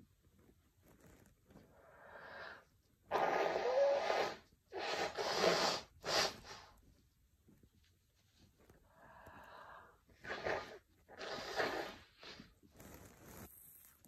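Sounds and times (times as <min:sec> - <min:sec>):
person blowing congested nose: 0:02.1 - 0:06.7, 0:10.2 - 0:13.0.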